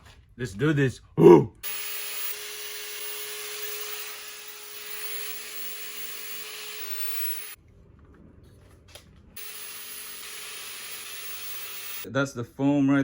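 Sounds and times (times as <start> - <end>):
electric sander hissing: 1.6 - 7.6, 9.4 - 12.1.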